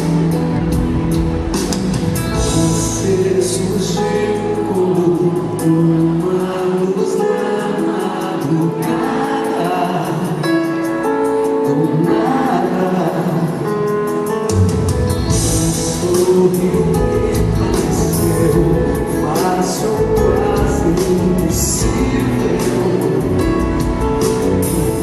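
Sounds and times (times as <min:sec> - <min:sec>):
live band playing: 0:00.0 - 0:25.0
person singing: 0:02.3 - 0:25.0.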